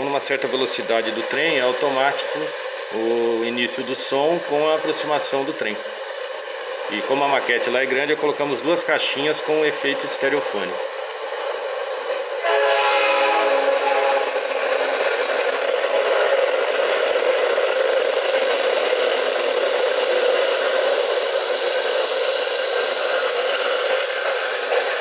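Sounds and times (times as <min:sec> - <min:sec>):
train wheels rattling on rail: 0:00.0 - 0:25.0
train horn: 0:12.4 - 0:14.5.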